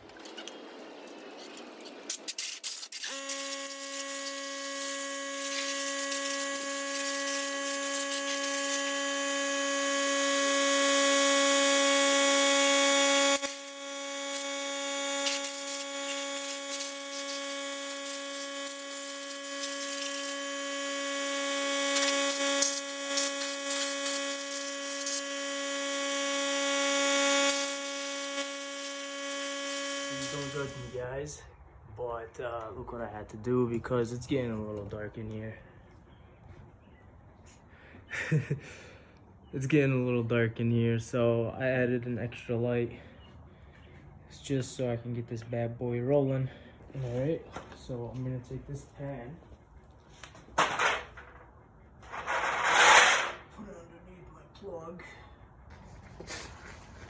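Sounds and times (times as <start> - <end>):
electrical hum: 3.0 - 31.6.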